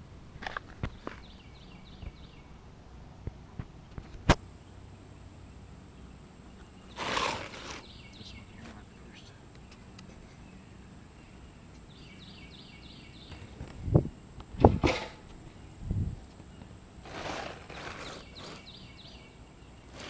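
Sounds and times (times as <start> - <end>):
bird chirping: 0.8 - 2.6, 4.5 - 14.4, 16.4 - 20.0.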